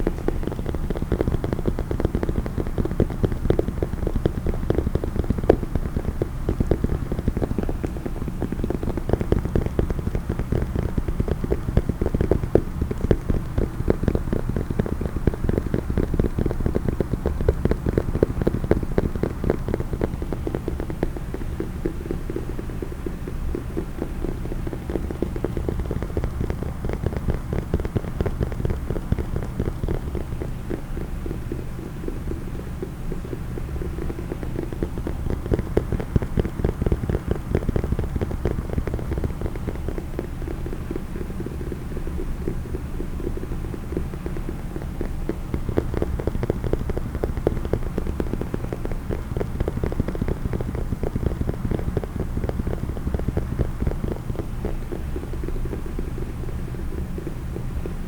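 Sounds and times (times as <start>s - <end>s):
fast tapping on a case: 0.0s - 58.0s.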